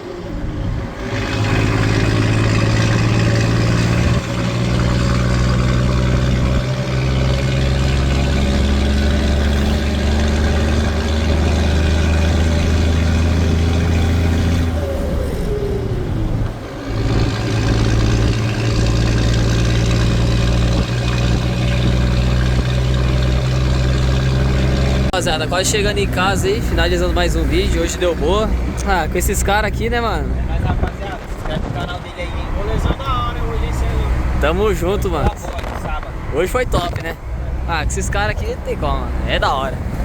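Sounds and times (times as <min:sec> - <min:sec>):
truck diesel engine running: 0:00.0 - 0:31.2.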